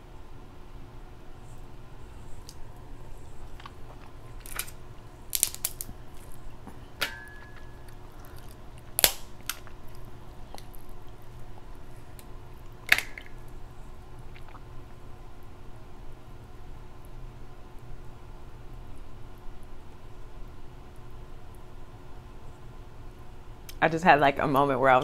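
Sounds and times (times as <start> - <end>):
crab shells cracking: 3.4 - 13.6
mouth clicks: 14.3 - 14.7.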